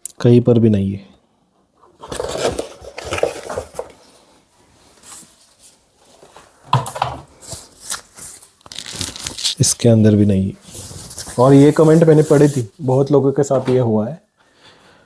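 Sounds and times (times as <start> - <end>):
cardboard packaging rustling: 1.9 - 4.3, 7.3 - 9.7, 10.6 - 12.8.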